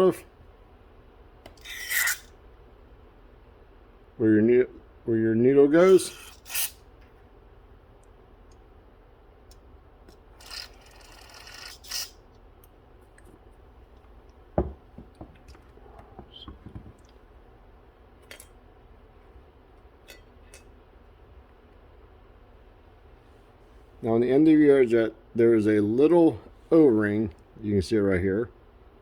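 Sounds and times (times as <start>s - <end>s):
parts clicking and rubbing: 10.1s - 12.2s.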